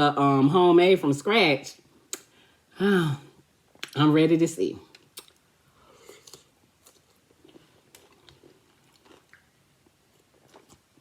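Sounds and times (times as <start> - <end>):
chewing food: 4.9 - 11.0
wet mouth clicks: 5.0 - 5.4.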